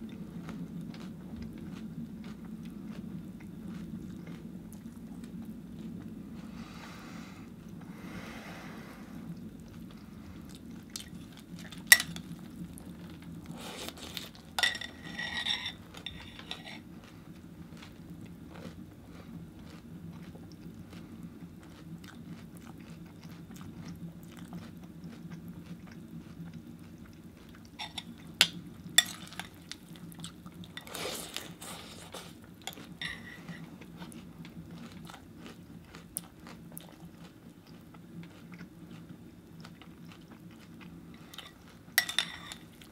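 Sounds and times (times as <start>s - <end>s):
crunchy chewing: 0.0s - 6.3s, 9.3s - 42.9s
steady low hum: 0.0s - 42.9s
metal spoon clinking on bowl: 14.6s - 16.6s, 42.0s - 42.6s.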